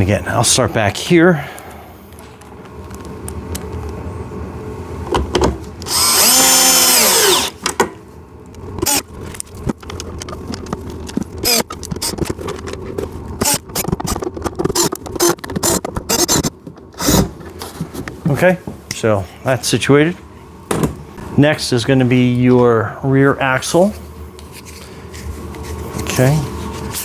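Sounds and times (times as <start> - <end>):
cordless drill whining: 5.8 - 7.6, 11.4 - 11.6.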